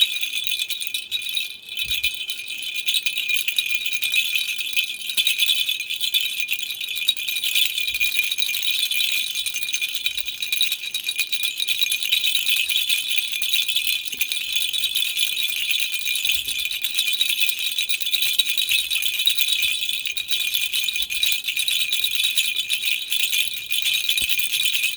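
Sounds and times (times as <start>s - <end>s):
baby rattle shaking: 11.7s - 24.9s.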